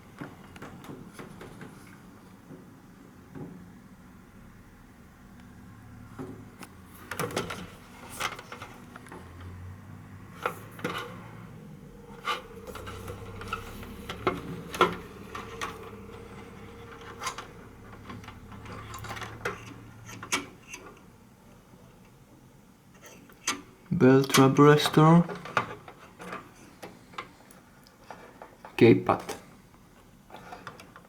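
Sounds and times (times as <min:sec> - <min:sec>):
faint low hum: 0:03.2 - 0:22.1
small hard parts clicking and scraping: 0:06.6 - 0:09.6, 0:10.3 - 0:21.1.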